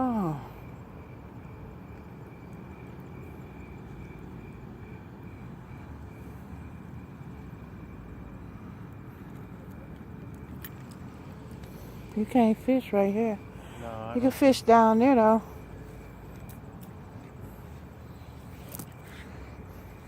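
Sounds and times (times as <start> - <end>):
faint high whine: 0.0 - 20.0
low outdoor rumble: 0.0 - 20.0.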